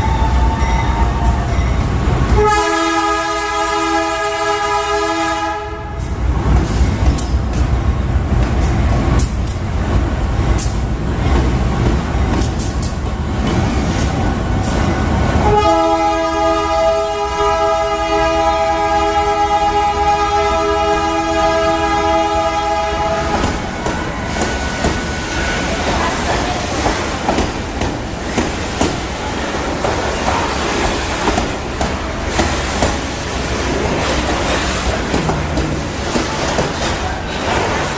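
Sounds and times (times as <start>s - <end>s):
freight train rumbling: 0.0s - 37.9s
locomotive air horn: 2.3s - 6.1s, 15.4s - 23.6s
wheels clattering over rails: 23.4s - 37.9s.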